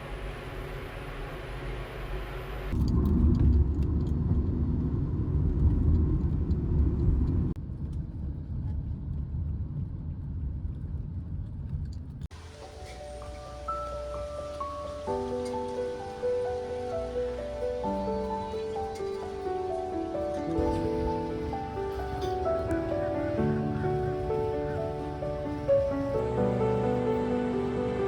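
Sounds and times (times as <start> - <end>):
faint high whine: 0.0 - 2.9
vehicle rumble and hiss: 8.6 - 28.0.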